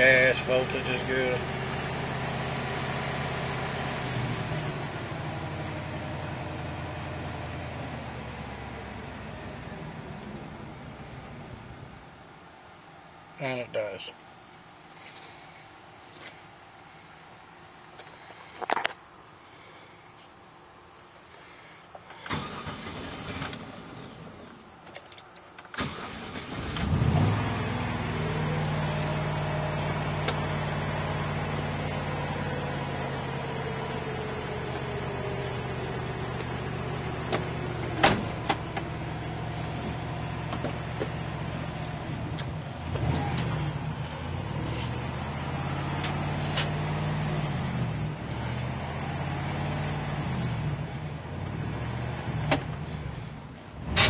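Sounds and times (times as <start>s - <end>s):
van engine starting and running: 0.0s - 12.3s, 21.4s - 54.0s.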